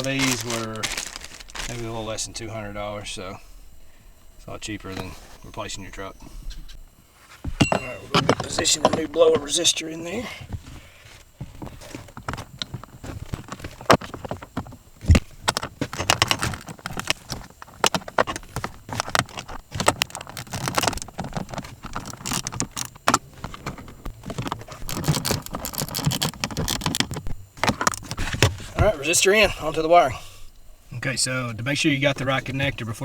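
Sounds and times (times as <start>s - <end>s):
parts clicking and rattling: 0.0s - 2.0s, 7.5s - 9.7s, 10.5s - 28.7s.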